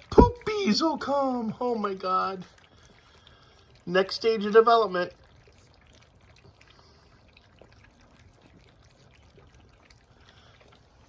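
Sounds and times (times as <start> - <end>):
puppies lapping and smacking food: 0.0 - 11.0.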